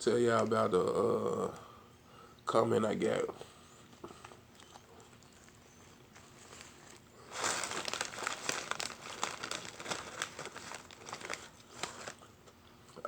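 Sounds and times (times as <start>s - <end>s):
food packaging crinkling: 4.2s - 12.7s.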